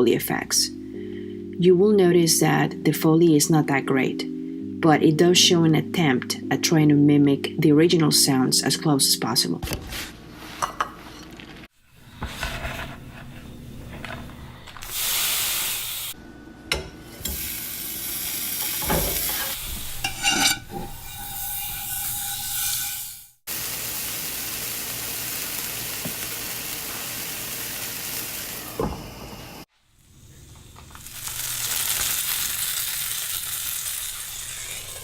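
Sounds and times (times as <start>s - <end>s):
utensils scraping and knocking pan: 12.0s - 14.3s, 18.8s - 23.1s
sandwich sizzling in a pan: 14.8s - 16.2s, 17.3s - 20.3s, 21.0s - 35.0s.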